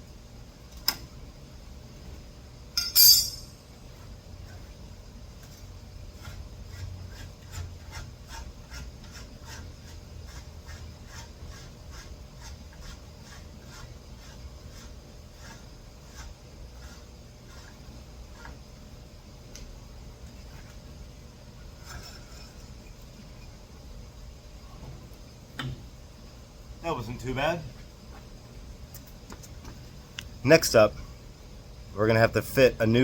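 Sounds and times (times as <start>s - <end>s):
low steady hum: 0.0s - 33.0s
light metal tool strokes: 6.2s - 18.6s.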